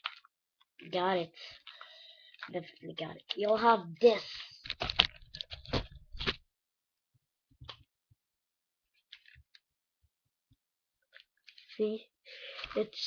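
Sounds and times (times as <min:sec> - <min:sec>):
paper crackling and rustling: 0:04.3 - 0:06.4.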